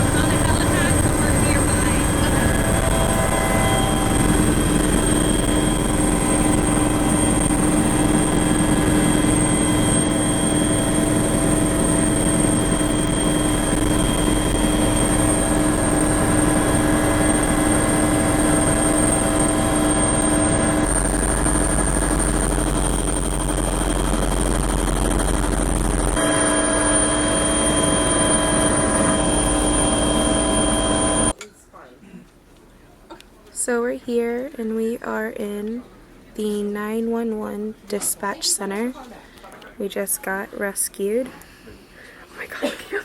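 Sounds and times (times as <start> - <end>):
helicopter rotor and engine drone: 0.0 - 31.3.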